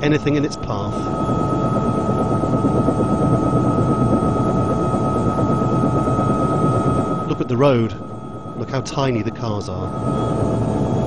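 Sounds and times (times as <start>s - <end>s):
helicopter rumble and whine: 0.0s - 11.0s.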